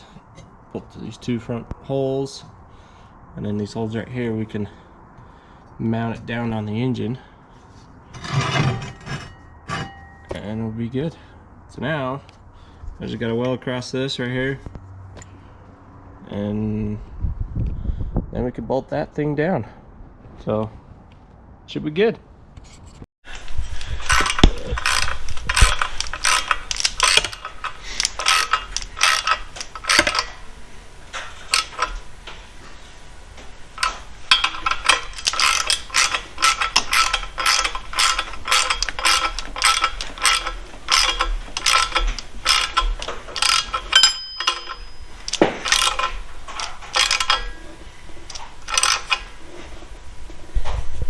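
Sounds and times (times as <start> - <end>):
ratchet wrench clicking: 23.3 - 30.5, 31.1 - 32.1, 33.8 - 49.4.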